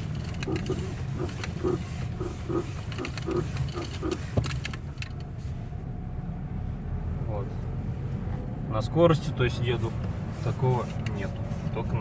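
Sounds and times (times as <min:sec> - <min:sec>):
car suspension creaking: 0:00.0 - 0:05.4
car rumbling in motion: 0:00.0 - 0:12.0.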